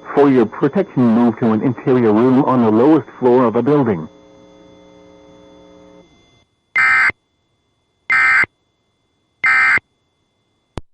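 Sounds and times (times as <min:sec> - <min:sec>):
faint steady hum: 0:00.0 - 0:10.8
digital data tone bursts: 0:06.8 - 0:07.2, 0:08.1 - 0:08.5, 0:09.4 - 0:09.8.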